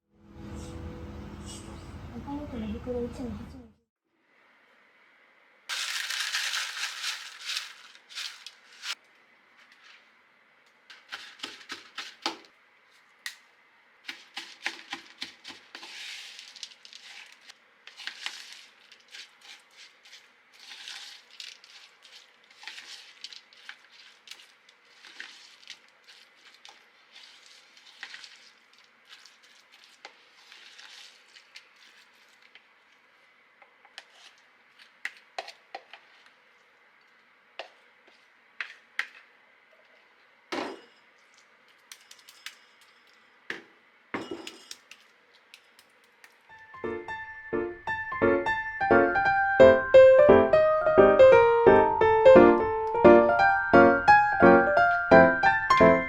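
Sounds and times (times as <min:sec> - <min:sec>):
dishes and utensils clinking: 0:44.2 - 0:45.0.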